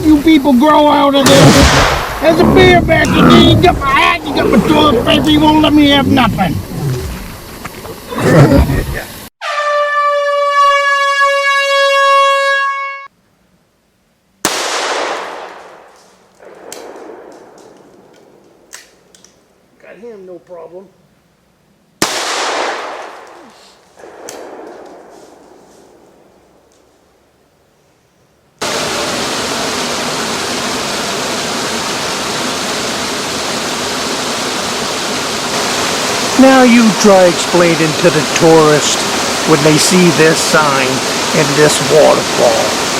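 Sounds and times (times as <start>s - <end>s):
faint rushing noise: 0.0s - 8.1s, 28.6s - 42.9s
sharp bang: 1.2s - 2.4s
loud horn blast: 9.4s - 13.1s.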